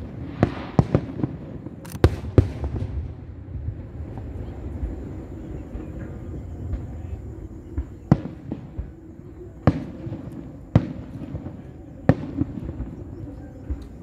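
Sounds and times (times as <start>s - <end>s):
fireworks bangs: 0.0s - 14.0s
faint firework pops: 0.3s - 3.1s, 7.7s - 9.0s, 9.6s - 14.0s.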